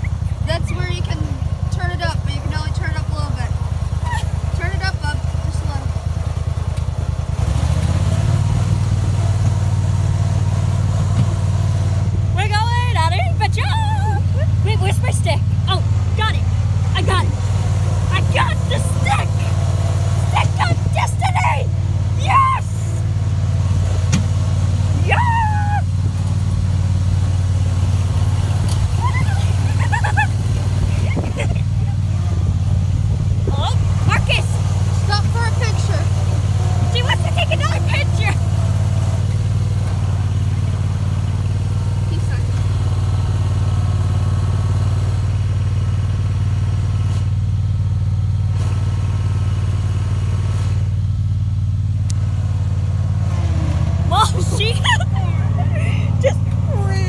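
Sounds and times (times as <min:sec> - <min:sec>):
riding lawnmower engine: 0:00.0 - 0:57.0
short high cries: 0:20.2 - 0:23.2, 0:25.0 - 0:26.0, 0:53.9 - 0:57.0.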